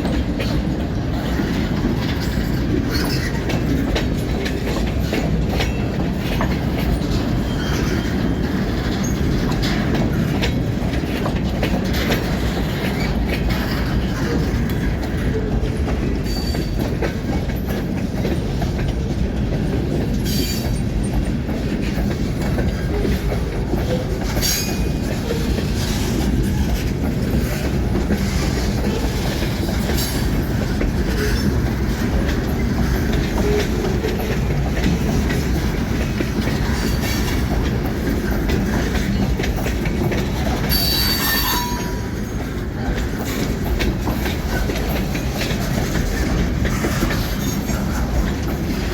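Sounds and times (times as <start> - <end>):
train wheels rumbling on rail: 0.0 - 48.9
wheels clacking over rail joints: 0.0 - 48.9
high-pitched wheel squeals: 40.7 - 42.1.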